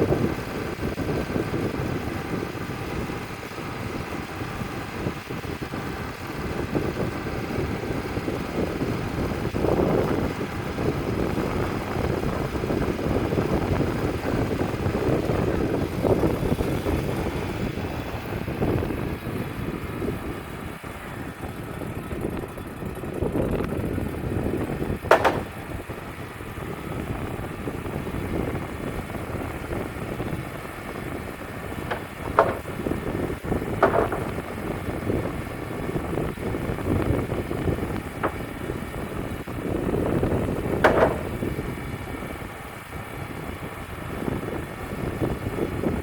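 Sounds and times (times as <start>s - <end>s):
band sawmill running: 23.6s - 41.8s
sharp knock: 25.1s - 25.7s, 31.9s - 32.8s, 33.8s - 34.4s, 40.8s - 41.4s.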